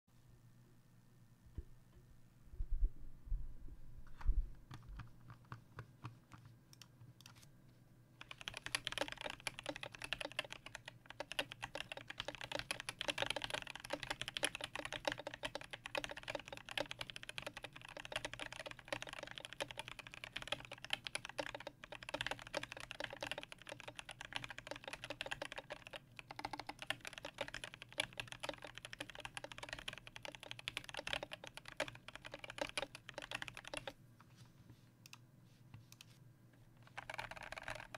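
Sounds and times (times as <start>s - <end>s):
typing on mechanical keyboard: 8.2s - 34.0s, 36.8s - 37.9s.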